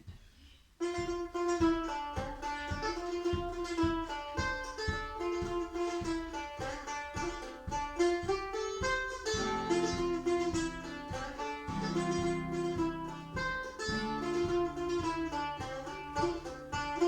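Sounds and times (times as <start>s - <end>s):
mandolin playing: 0.8s - 17.0s.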